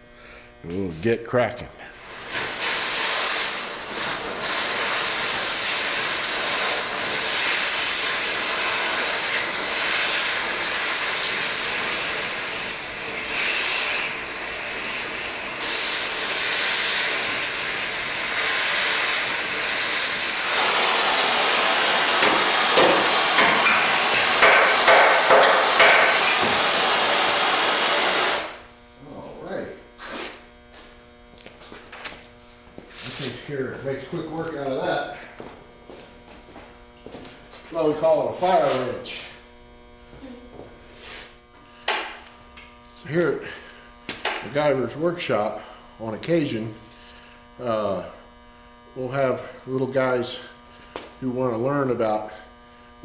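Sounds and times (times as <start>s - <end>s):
cutting torch hissing: 1.9s - 28.7s
torch pulses: 2.0s - 28.7s.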